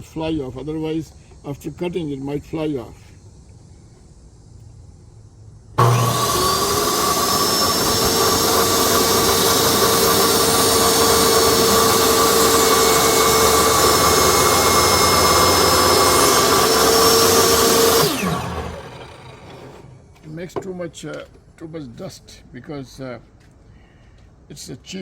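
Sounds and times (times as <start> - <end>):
table saw motor whine: 5.8 - 20.2.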